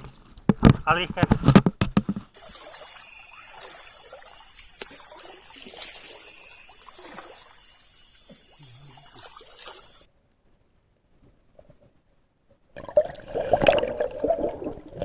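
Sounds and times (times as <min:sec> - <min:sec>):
night insects chorus: 0:00.0 - 0:10.1
river water trickling and sloshing: 0:02.3 - 0:10.1.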